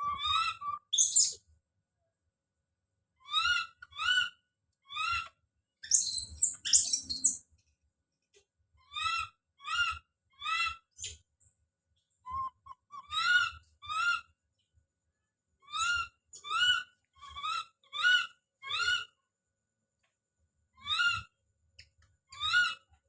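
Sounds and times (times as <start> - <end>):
baby monkey screaming: 0.0 - 1.4, 3.2 - 7.4, 8.9 - 11.2, 12.4 - 14.3, 15.6 - 19.2, 20.8 - 21.4, 22.3 - 22.9.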